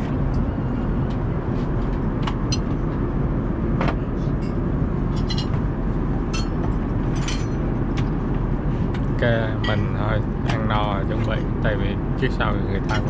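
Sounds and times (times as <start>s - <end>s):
airplane cabin rumble: 0.0s - 13.0s.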